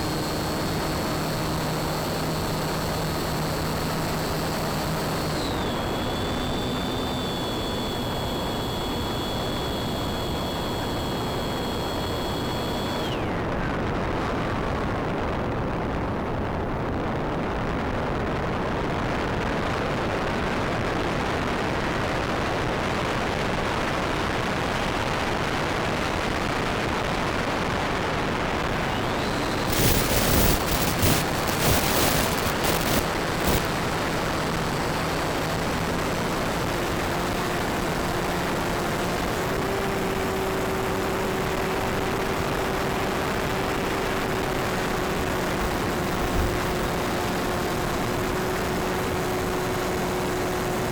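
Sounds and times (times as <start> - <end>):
electric motor whining: 0.0 - 13.6, 28.6 - 50.9
loud crackling bursts: 28.8 - 36.4.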